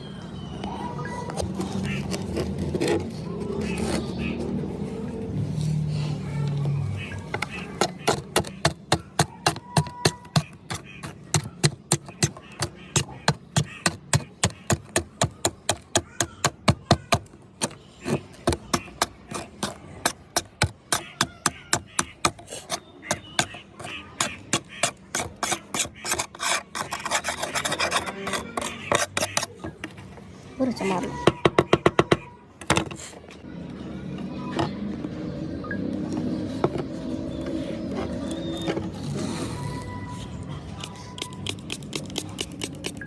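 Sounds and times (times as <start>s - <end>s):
knife blade scraping strokes: 22.0s - 29.6s.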